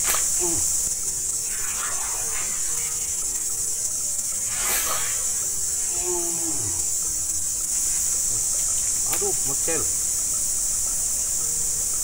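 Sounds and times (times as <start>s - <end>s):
insects droning: 0.0s - 12.0s.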